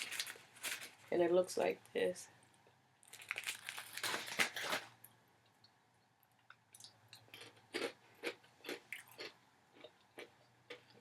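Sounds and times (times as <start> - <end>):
person chewing crunchy snack: 6.7 - 11.0.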